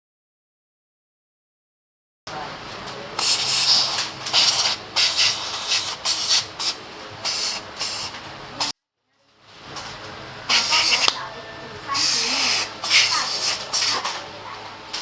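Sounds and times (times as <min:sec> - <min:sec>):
compressed air blasts: 0:03.2 - 0:08.7, 0:10.5 - 0:11.2, 0:11.9 - 0:14.2.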